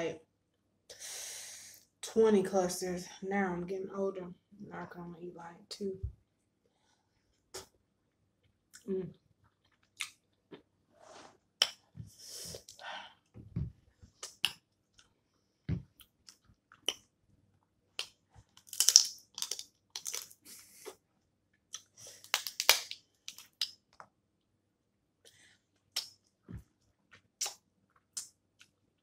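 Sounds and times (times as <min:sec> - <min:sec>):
dull low thumps: 0:13.4 - 0:13.8
crab shells cracking: 0:18.0 - 0:20.4, 0:21.8 - 0:23.8.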